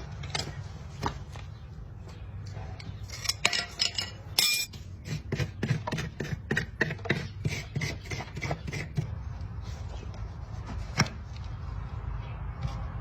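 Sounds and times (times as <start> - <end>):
metal tools on hoof: 2.5 - 6.1
metallic clink: 3.2 - 4.8.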